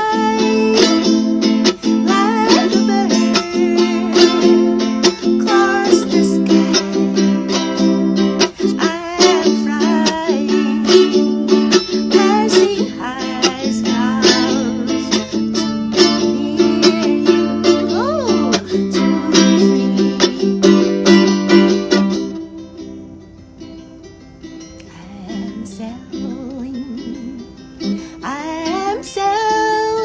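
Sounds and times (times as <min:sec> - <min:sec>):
ukulele strumming chords: 0:00.0 - 0:30.0.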